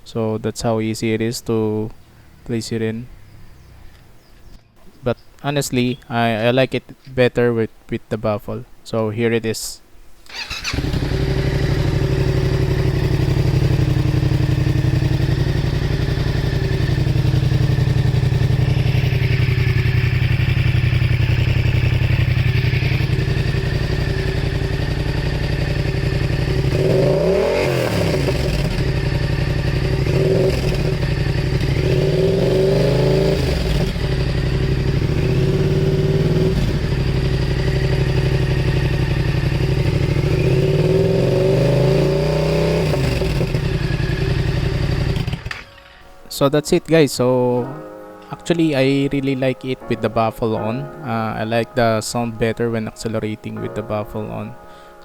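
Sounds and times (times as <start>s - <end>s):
motorcycle engine idling: 10.3s - 45.7s
motorcycle engine revving: 10.3s - 45.7s.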